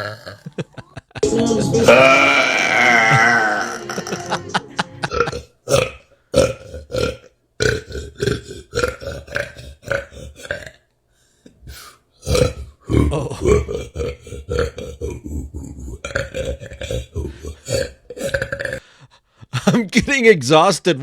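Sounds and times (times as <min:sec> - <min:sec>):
woman burping: 0:01.6 - 0:10.8, 0:16.0 - 0:18.8.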